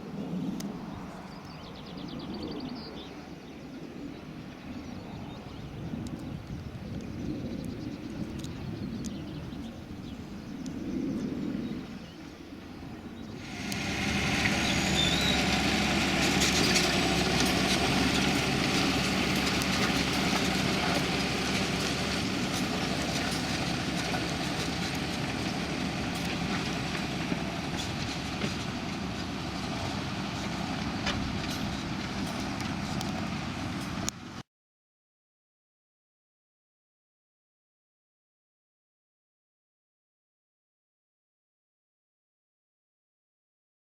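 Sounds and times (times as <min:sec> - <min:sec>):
tractor diesel engine running: 0:13.3 - 0:34.4.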